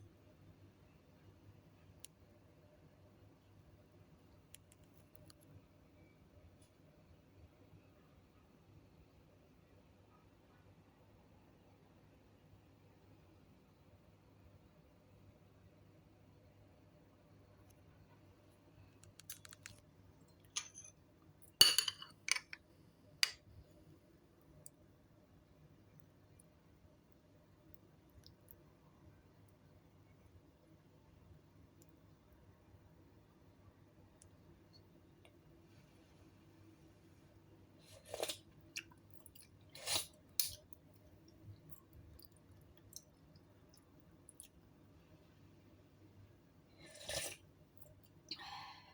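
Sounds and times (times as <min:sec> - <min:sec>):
kitchenware clinking: 0:20.5 - 0:21.0, 0:21.6 - 0:22.6
person eating: 0:37.8 - 0:40.6, 0:46.8 - 0:47.4.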